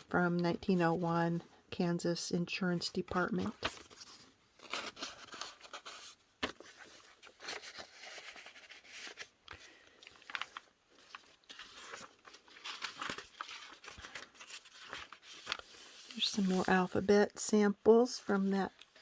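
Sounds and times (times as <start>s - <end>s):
paper pages rustling: 3.0s - 17.1s.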